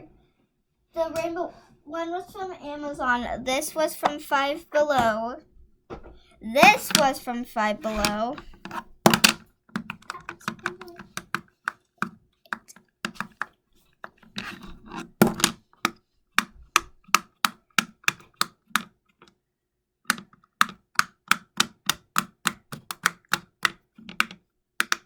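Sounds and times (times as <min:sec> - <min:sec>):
pop-it fidget toy popping: 0:09.1 - 0:10.1, 0:15.2 - 0:15.6.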